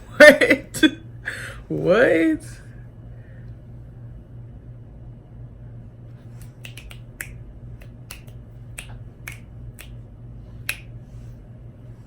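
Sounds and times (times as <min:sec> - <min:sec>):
steady low hum: 0:00.0 - 0:12.0
short sharp snaps: 0:06.3 - 0:11.0.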